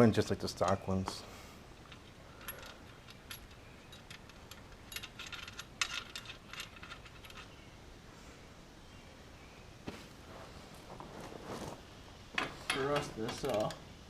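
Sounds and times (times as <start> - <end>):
metal tools clinking: 1.8 - 7.6, 12.4 - 13.8.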